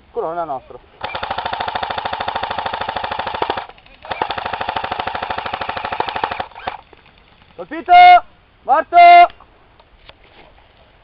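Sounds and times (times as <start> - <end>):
airsoft gun firing full auto: 1.0 - 6.8.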